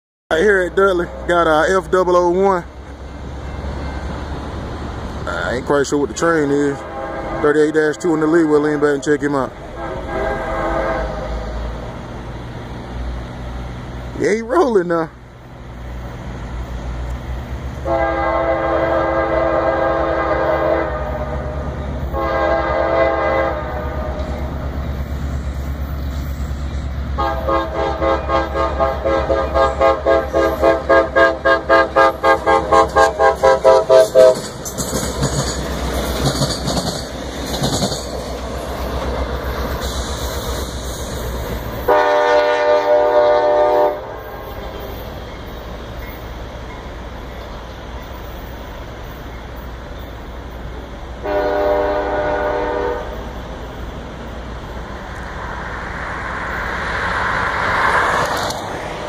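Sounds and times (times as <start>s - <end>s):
diesel engine rumbling: 0.3s - 59.0s
train air horn blasts: 6.7s - 9.1s, 9.7s - 11.6s, 17.8s - 24.5s, 27.2s - 34.5s, 41.8s - 45.0s, 51.2s - 53.3s
train wheels clacking over rails: 31.9s - 42.1s.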